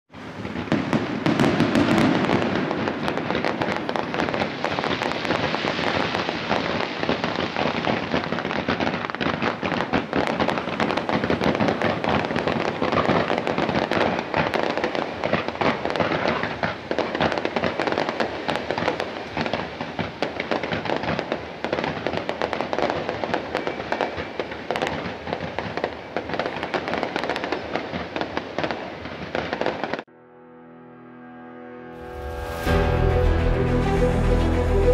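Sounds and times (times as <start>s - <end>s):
fireworks crackling and popping: 0.1s - 30.1s, 32.0s - 34.9s
deep firework boom: 0.2s - 6.7s, 32.0s - 34.9s.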